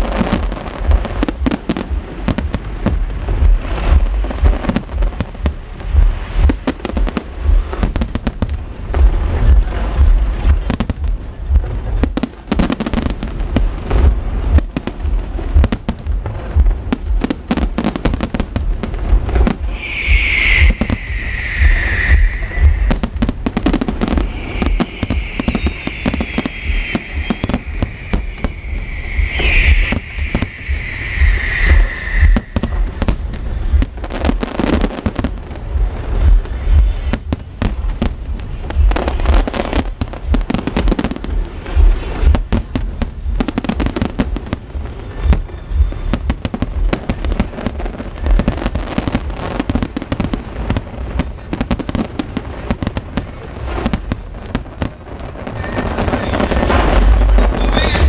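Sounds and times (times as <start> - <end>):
low rumble: 0.0 - 12.4, 18.2 - 43.4
fireworks booming: 0.0 - 58.0
high wavering whistle: 19.5 - 33.8.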